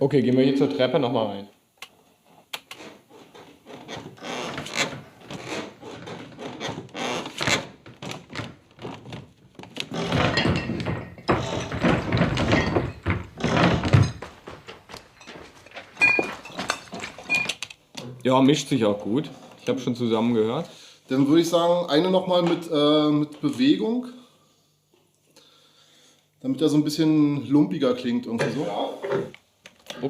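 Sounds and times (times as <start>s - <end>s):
heavy footsteps on wooden stairs: 7.8s - 17.3s.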